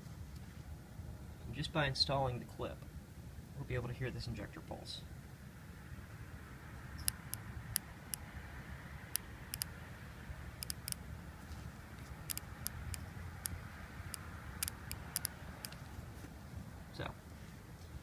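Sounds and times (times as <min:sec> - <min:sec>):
fuel injector clicking: 0:07.0 - 0:08.2, 0:10.6 - 0:11.0, 0:12.0 - 0:15.8.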